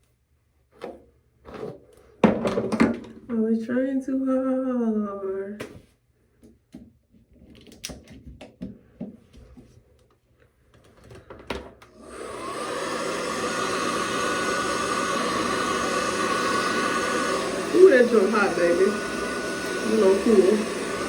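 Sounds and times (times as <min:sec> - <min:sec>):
hair dryer blowing: 0:11.9 - 0:21.0.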